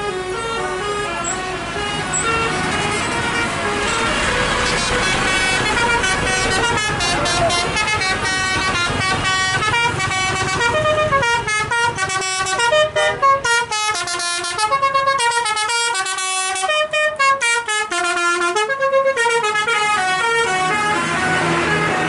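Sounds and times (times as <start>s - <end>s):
bus musical horn tune: 0.0s - 22.0s.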